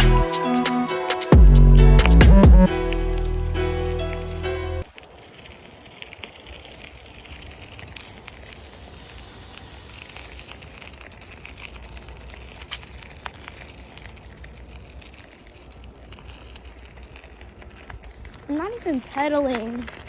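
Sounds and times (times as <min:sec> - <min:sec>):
low rumble: 0:00.0 - 0:00.3, 0:01.3 - 0:04.8
bicycle tyres crackling: 0:00.0 - 0:20.0.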